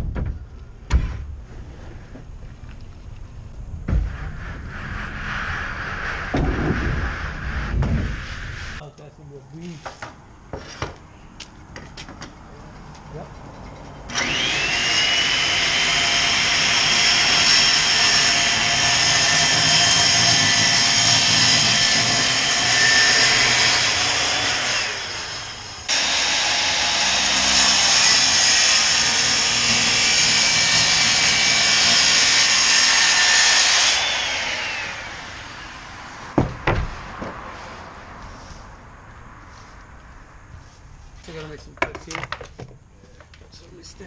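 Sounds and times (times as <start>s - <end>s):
power tool motor whining: 14.1s - 35.9s.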